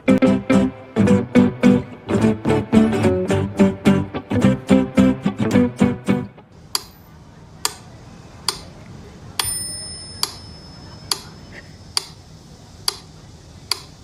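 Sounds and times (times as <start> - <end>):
bell-like ding: 9.4 - 11.5.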